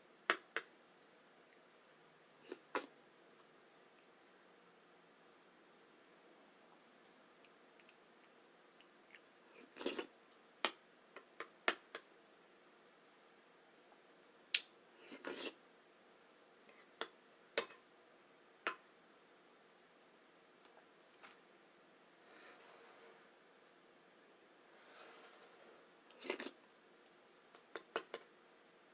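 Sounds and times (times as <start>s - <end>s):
slurping: 8.8s - 10.1s, 15.0s - 15.6s, 24.8s - 26.7s.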